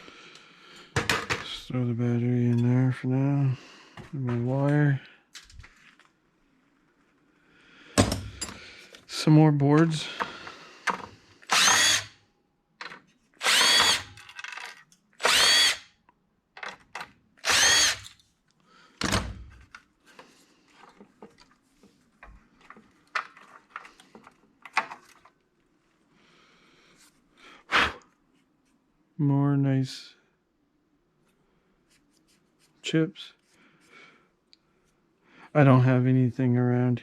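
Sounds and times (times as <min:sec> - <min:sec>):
power drill whining: 0:11.4 - 0:12.2, 0:13.4 - 0:14.4, 0:15.2 - 0:15.9, 0:17.4 - 0:18.2.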